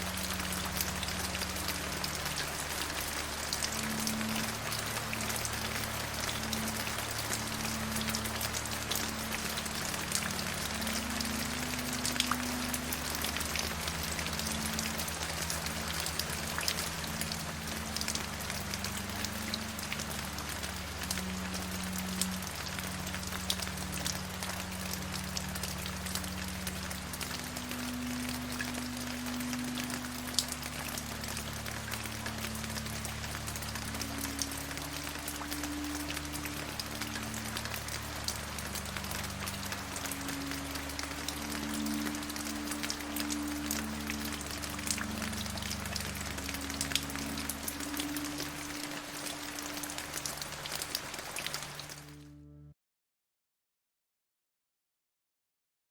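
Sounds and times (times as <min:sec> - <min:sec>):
steady rain: 0:00.0 - 0:52.3
low drone of held notes: 0:52.0 - 0:52.8.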